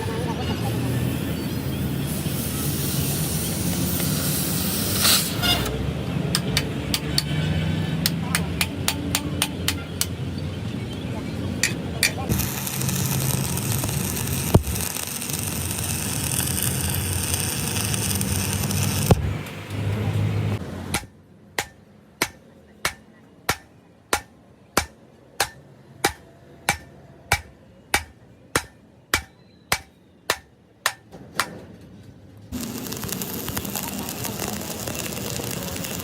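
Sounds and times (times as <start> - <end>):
machine running: 12.3 - 19.3, 32.6 - 36.0
hand hammer blows: 21.0 - 31.5.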